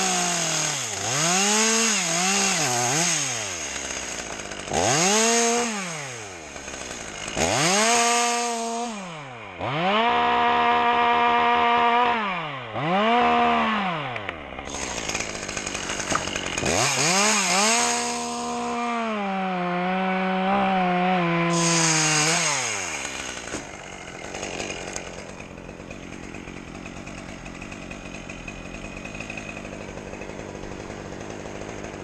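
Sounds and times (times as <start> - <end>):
chainsaw revving: 0.0 - 32.0.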